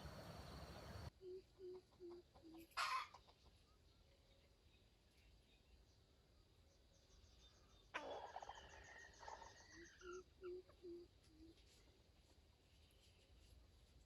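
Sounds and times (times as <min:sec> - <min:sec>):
harsh junglefowl call: 0:00.8 - 0:03.3.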